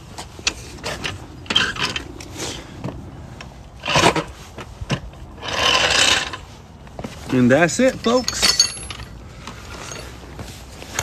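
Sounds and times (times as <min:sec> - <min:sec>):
car jack scraping: 0:00.2 - 0:02.6, 0:03.8 - 0:06.6.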